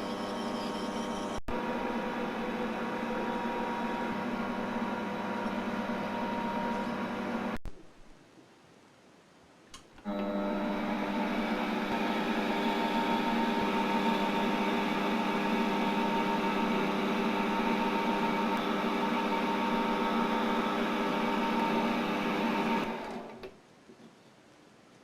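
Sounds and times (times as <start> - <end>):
steady machine hum: 0.0 - 7.6.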